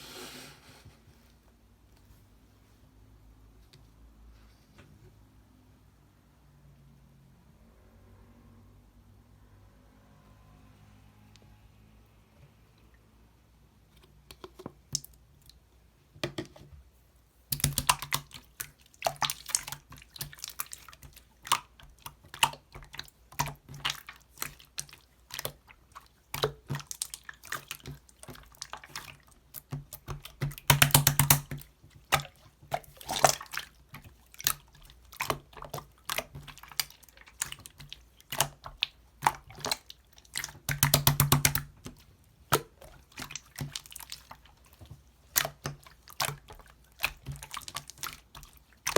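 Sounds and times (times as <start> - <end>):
slime squished by hand: 17.5 - 48.9.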